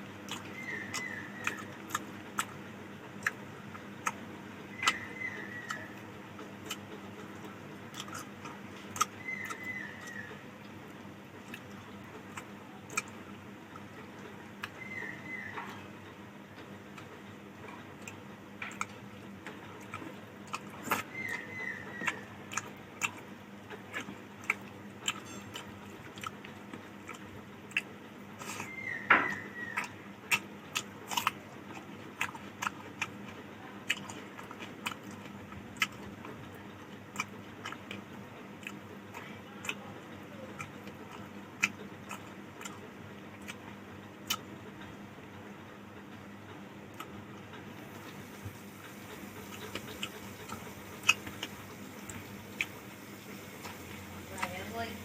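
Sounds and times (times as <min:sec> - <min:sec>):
person chewing food: 0:00.0 - 0:45.4, 0:46.9 - 0:55.0
wet lip smacks and clicks: 0:04.8 - 0:05.0, 0:18.0 - 0:33.3, 0:33.9 - 0:36.4, 0:43.4 - 0:44.9, 0:48.8 - 0:52.8.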